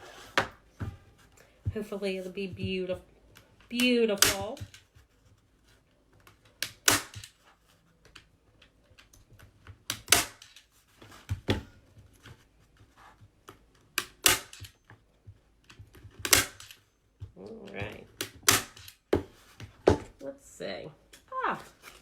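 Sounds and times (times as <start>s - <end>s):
staple gun firing: 4.2s - 4.6s, 6.6s - 7.3s, 9.9s - 10.6s, 14.0s - 14.7s, 16.2s - 16.8s, 18.2s - 19.0s.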